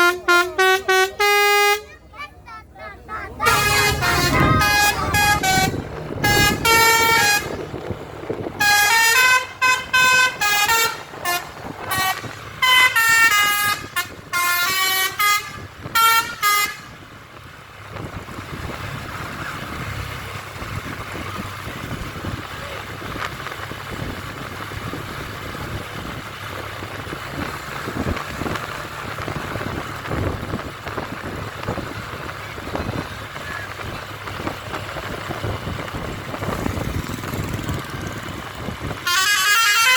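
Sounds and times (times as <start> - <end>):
bus horn playing notes: 0.0 - 2.3, 3.1 - 17.1, 39.0 - 39.9
engine and road noise: 0.0 - 39.9.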